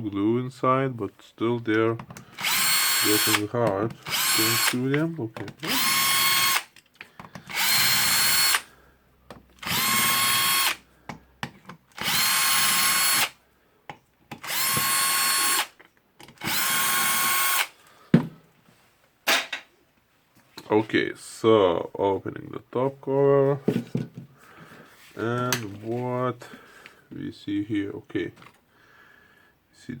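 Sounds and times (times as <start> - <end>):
cordless drill whining: 2.2 - 5.0, 5.6 - 8.7, 9.6 - 10.8, 11.9 - 13.4, 14.4 - 17.8.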